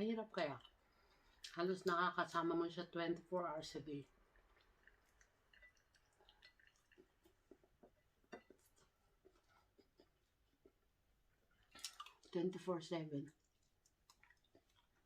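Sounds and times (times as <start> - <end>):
person chewing wet clicks: 4.1 - 10.8, 11.5 - 12.4, 13.3 - 15.0.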